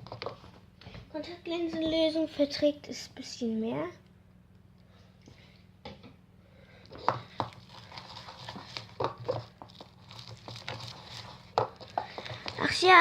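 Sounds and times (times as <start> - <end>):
slime squishing while stirred: 6.8 - 13.0.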